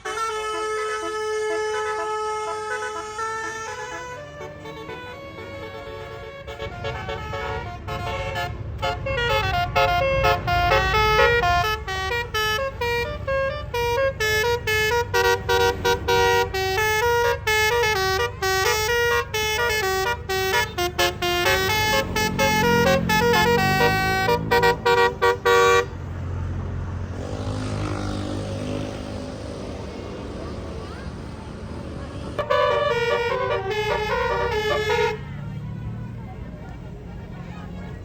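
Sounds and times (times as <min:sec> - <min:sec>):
musical air horn playing a tune: 0:00.0 - 0:26.0, 0:31.6 - 0:35.3
bus engine rumble: 0:00.0 - 0:38.0.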